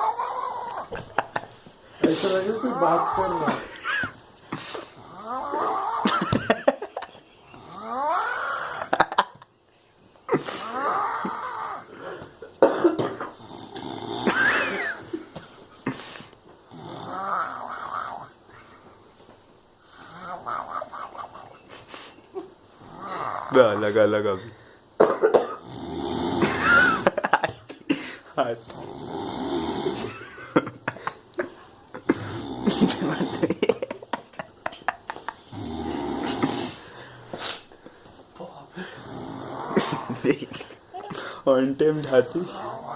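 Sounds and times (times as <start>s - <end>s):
person snoring heavily: 0.0s - 1.0s, 2.0s - 3.6s, 4.6s - 6.2s, 7.5s - 9.0s, 10.3s - 12.1s, 13.3s - 15.1s, 15.9s - 18.4s, 19.8s - 21.5s, 22.7s - 23.8s, 25.6s - 27.2s, 28.6s - 30.4s, 32.0s - 33.8s, 35.2s - 37.7s, 38.8s - 40.4s, 42.0s - 42.9s.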